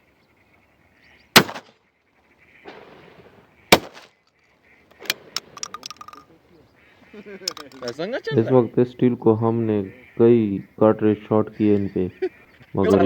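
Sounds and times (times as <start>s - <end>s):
shotgun shots: 1.4s - 1.8s, 2.6s - 4.2s.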